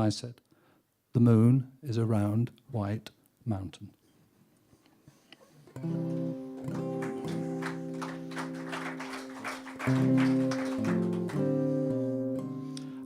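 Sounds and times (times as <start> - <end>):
acoustic guitar strumming chords: 5.7 - 13.0.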